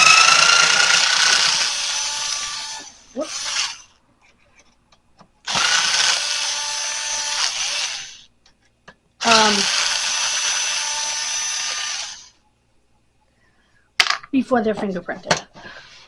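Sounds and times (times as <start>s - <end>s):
power drill running: 0.0s - 4.0s, 5.5s - 8.2s, 9.2s - 12.4s.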